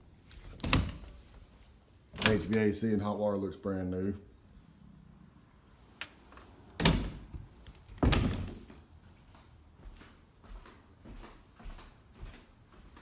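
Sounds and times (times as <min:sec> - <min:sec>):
door banging shut: 0:08.0 - 0:08.7.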